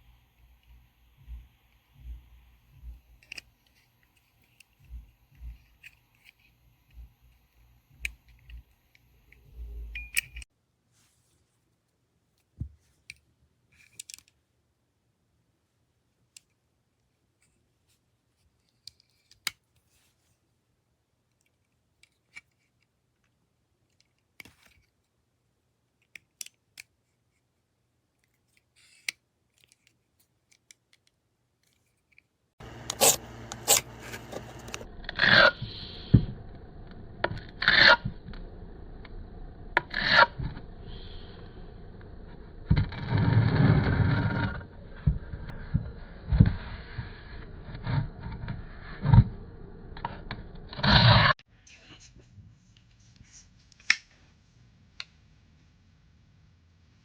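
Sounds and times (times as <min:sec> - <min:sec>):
scraping on a hard surface: 0:32.6 - 0:38.6, 0:39.6 - 0:52.1.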